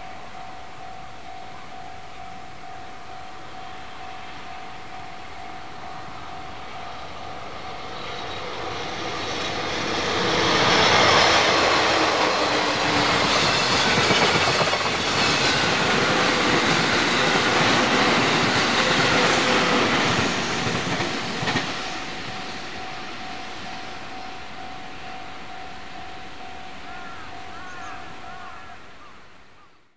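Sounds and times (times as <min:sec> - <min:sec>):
level crossing warning bell: 0:00.0 - 0:09.4, 0:20.8 - 0:27.8
train wheels clattering over rails: 0:07.8 - 0:23.9.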